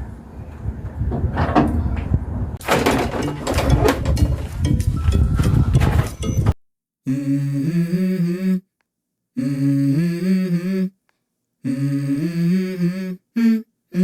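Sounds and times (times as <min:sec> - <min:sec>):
person humming a melody: 0:07.1 - 0:08.7, 0:09.4 - 0:11.0, 0:11.6 - 0:14.0.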